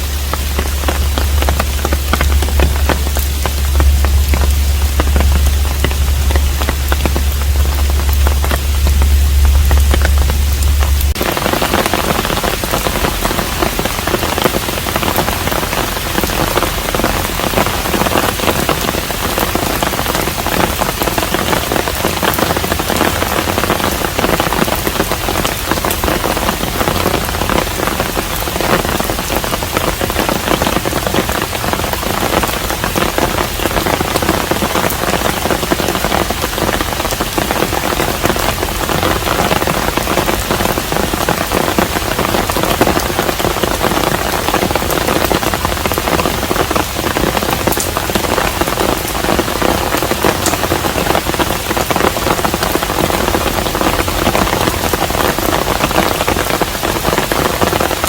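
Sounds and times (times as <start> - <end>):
low hum: 0.0 - 18.1
raindrops ticking: 0.0 - 58.0
steady rain patter: 0.0 - 58.0.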